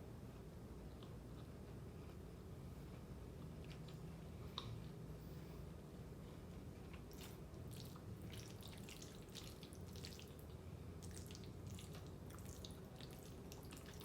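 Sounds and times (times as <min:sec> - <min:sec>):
low steady hum: 0:00.0 - 0:14.0
wet chewing and mouth sounds: 0:06.5 - 0:14.0.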